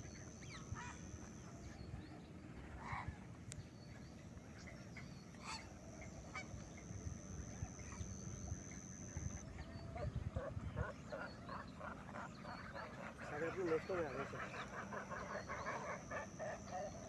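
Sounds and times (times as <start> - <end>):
waterbirds honking: 9.4 - 17.0.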